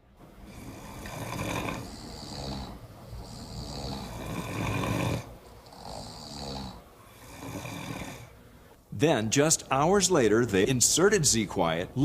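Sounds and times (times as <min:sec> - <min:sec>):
person snoring: 0:00.4 - 0:08.4.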